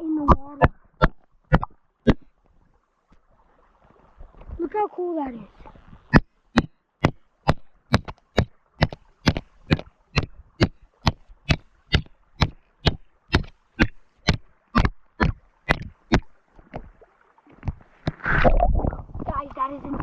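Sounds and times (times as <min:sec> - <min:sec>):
sharp taps on ice: 0:06.1 - 0:16.9.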